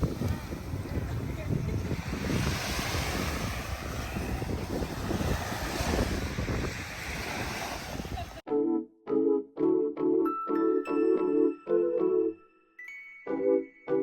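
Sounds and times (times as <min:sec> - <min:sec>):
sea waves: 0:00.0 - 0:08.4
wind buffeting microphone: 0:00.0 - 0:08.4
piano-like music: 0:08.5 - 0:14.0.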